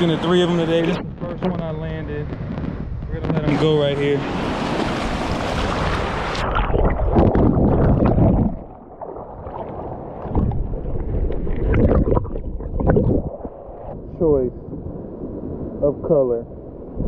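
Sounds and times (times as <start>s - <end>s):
wind buffeting microphone: 0.0s - 17.0s
water splashing and sloshing: 4.1s - 15.8s.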